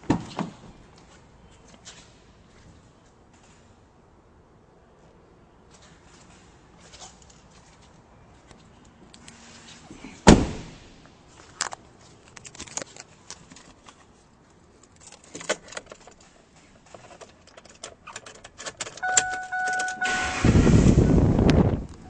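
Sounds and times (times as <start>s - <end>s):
loud thump: 10.3s - 10.9s
electronic chime beeping: 19.0s - 20.5s.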